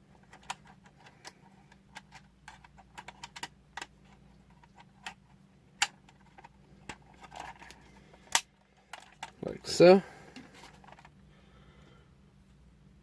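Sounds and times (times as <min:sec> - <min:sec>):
faint steady hum: 0:00.0 - 0:13.0
plastic toy parts clicking: 0:00.3 - 0:03.9.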